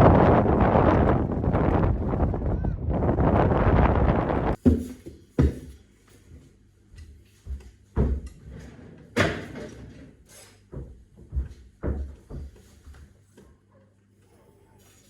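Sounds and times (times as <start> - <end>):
wind rumbling on microphone: 0.0 - 4.6.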